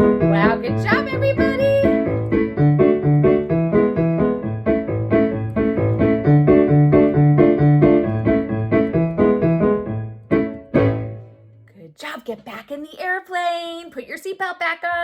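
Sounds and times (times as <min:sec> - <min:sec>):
bouncy piano music: 0:00.0 - 0:11.6.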